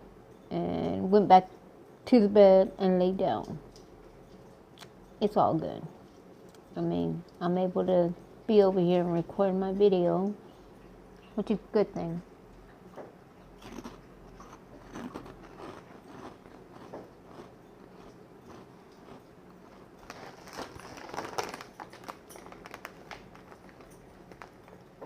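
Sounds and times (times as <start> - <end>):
person chewing crunchy chips: 13.6 - 24.7.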